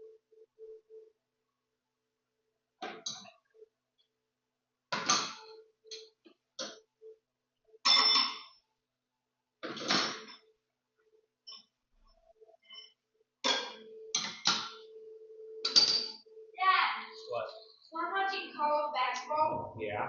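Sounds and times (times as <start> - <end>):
metal tools clanking: 15.7 - 16.2.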